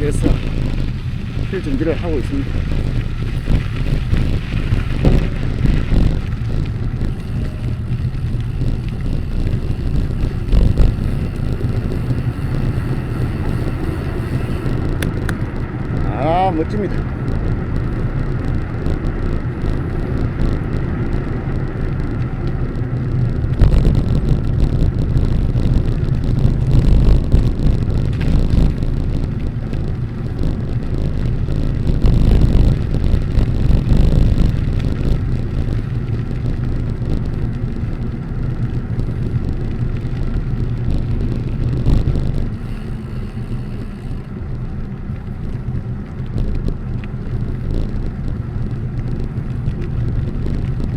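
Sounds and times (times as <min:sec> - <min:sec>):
wind buffeting microphone: 0:00.0 - 0:50.9.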